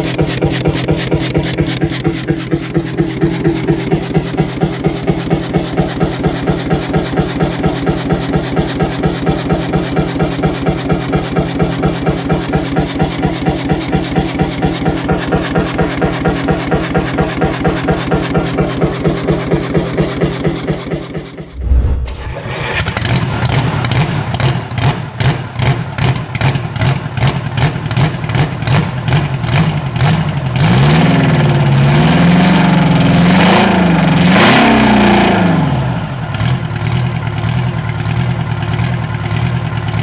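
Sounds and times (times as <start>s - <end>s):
single-cylinder engine running: 0.0s - 22.3s.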